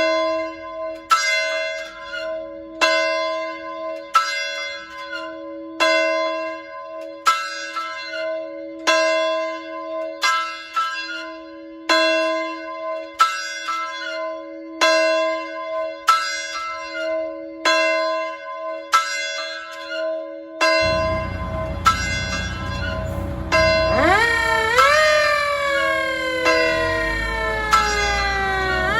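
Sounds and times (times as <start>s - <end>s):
fire alarm bell ringing: 20.8s - 28.9s
fire truck engine rumble: 20.8s - 28.9s
siren winding up: 20.8s - 28.9s.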